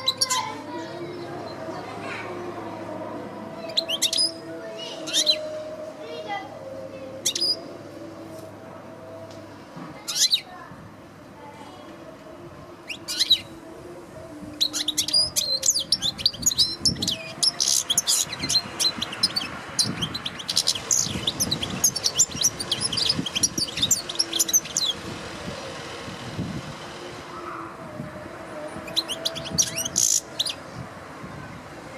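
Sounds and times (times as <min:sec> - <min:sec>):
bird twittering song: 0:03.6 - 0:05.6, 0:07.2 - 0:07.7, 0:12.8 - 0:13.5, 0:14.6 - 0:25.0, 0:28.8 - 0:30.6.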